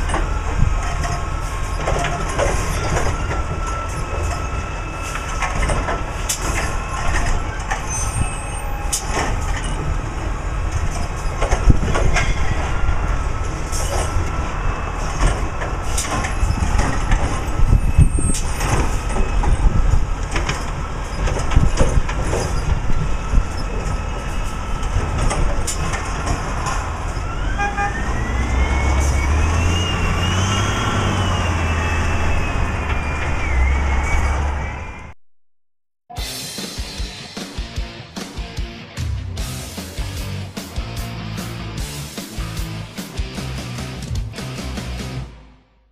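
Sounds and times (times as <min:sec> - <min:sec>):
metal clanks and knocks: 0:00.0 - 0:27.3
diesel engine running and revving: 0:00.0 - 0:35.2, 0:38.8 - 0:45.4.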